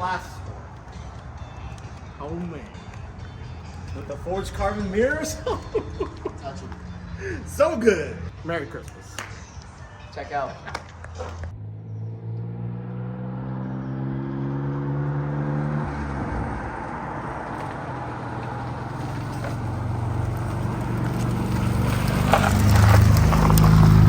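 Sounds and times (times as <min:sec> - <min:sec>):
road noise: 0:00.0 - 0:24.0
car engine running: 0:16.3 - 0:24.0.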